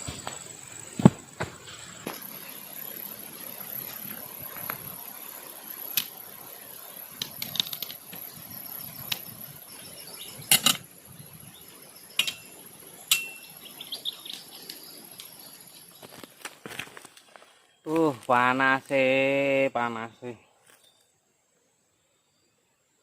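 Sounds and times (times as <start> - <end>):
high-pitched insect whine: 0.0 - 23.0.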